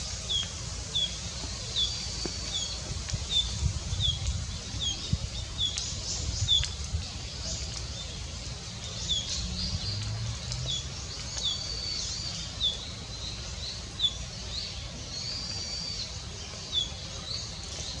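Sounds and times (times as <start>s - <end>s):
songbirds chirping: 0.0s - 18.0s.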